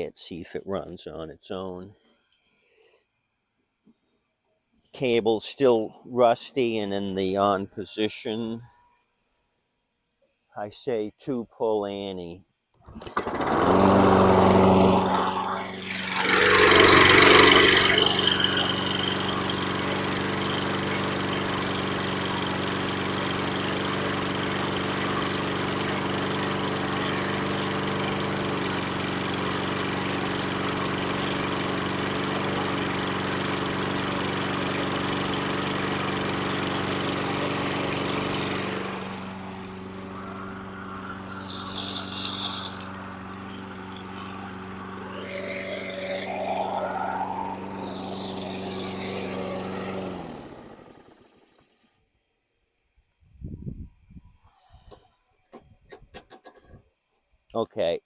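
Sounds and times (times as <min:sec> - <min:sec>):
short high rattles: 0:12.9 - 0:19.7, 0:36.1 - 0:51.5
lawn mower engine running: 0:12.9 - 0:51.7.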